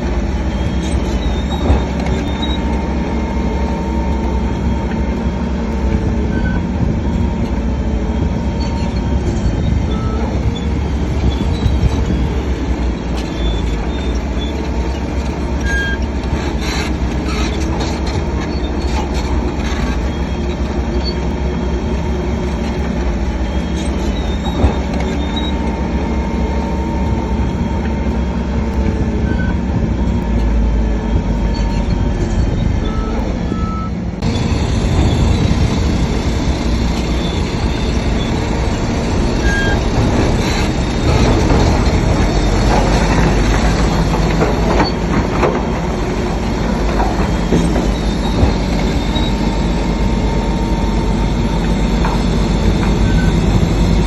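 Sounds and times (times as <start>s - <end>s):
diesel engine rumbling under load: 0.0s - 54.0s
steel tracks squealing and clanking: 0.0s - 54.0s.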